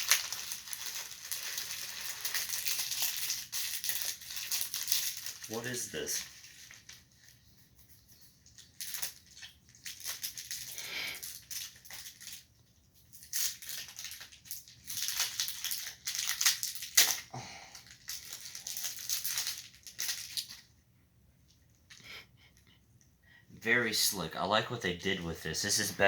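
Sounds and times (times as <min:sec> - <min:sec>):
plastic bag crinkling and tearing: 0:00.0 - 0:07.4, 0:08.5 - 0:20.7.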